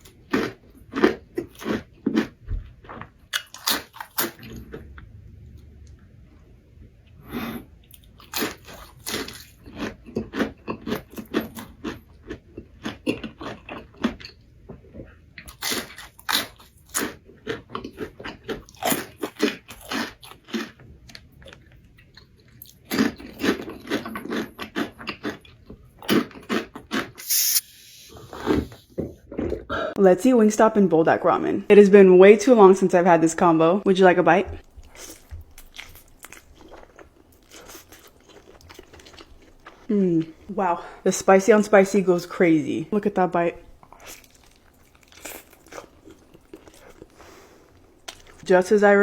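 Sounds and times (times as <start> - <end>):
wet chewing: 7.9 - 27.6, 34.6 - 40.5, 43.8 - 48.4
crunching crispy food: 15.4 - 27.2, 34.8 - 39.9, 43.8 - 48.4.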